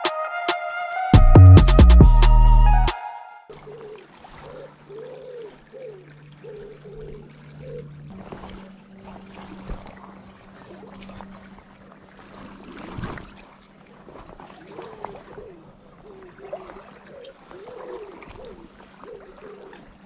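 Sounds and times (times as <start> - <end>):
river water trickling: 3.5 - 20.0
wavering low warble: 5.9 - 11.9.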